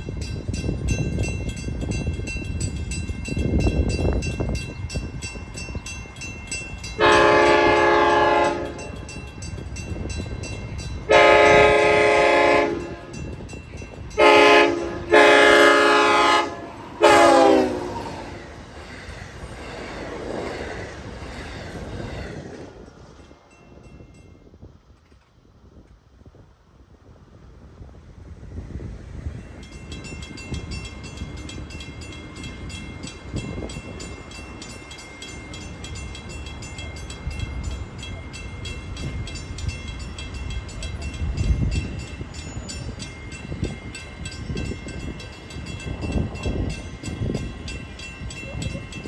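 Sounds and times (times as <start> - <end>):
train passing with low rumble: 0.0 - 49.0
train horn blasts: 7.0 - 9.1, 11.1 - 13.2, 14.1 - 18.4.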